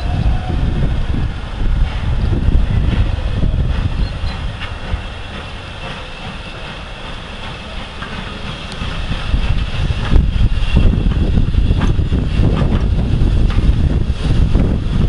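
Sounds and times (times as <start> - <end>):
train rail noise: 0.0 - 15.0
wind buffeting microphone: 0.0 - 15.0.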